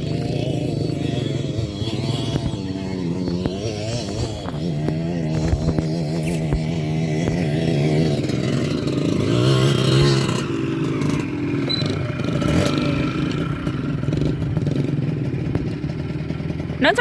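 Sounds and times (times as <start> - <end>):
dirt bike engines revving: 0.0 - 17.0.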